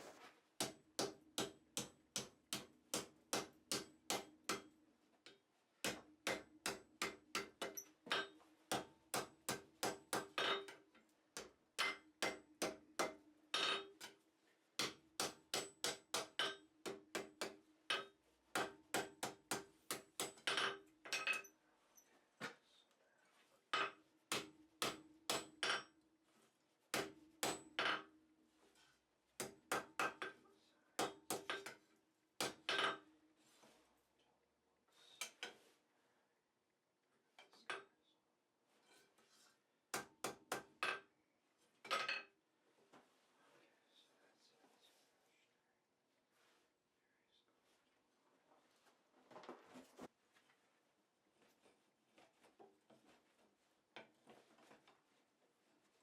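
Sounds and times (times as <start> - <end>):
hammer striking metal on anvil: 0.6 - 4.7, 5.8 - 10.8, 11.4 - 14.2, 24.3 - 25.9, 27.0 - 28.0.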